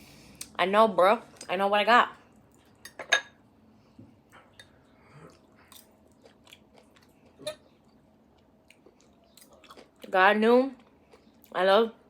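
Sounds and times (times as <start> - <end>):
chewing food: 4.6 - 11.6.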